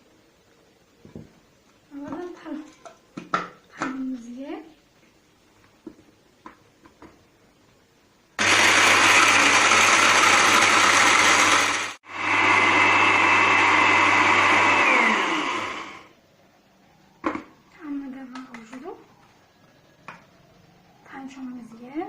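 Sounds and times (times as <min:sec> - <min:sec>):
electric grinder running: 0:08.4 - 0:16.1.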